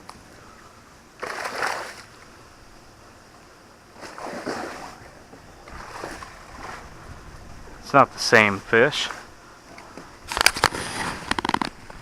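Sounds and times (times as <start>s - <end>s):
water splashing against boat hull: 3.9s - 7.0s.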